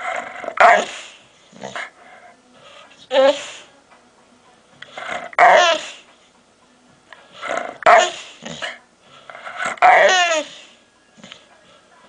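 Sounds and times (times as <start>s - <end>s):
dog yowling: 5.4s - 6.0s, 9.8s - 10.6s.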